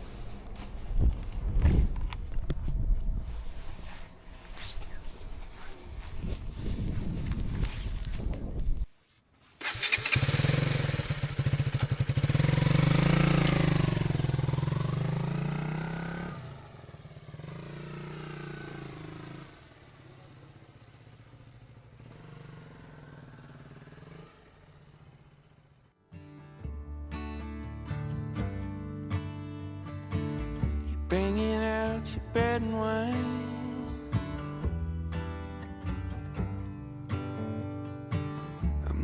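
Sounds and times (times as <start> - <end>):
motorcycle engine revving: 9.6 - 26.0.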